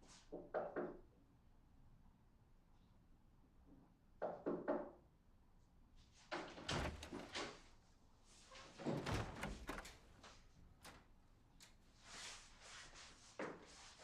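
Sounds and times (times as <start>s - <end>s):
door clunking shut: 6.5s - 7.6s, 8.8s - 11.1s
door click: 8.9s - 10.2s.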